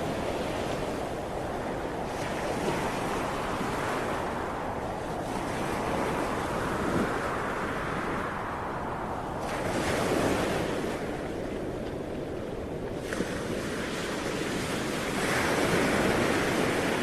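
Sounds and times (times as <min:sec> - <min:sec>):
ocean waves surging: 0:12.4 - 0:17.0.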